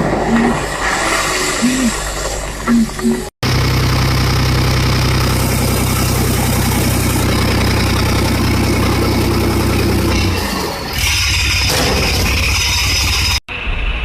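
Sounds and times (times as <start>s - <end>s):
truck diesel engine running: 3.0s - 13.4s.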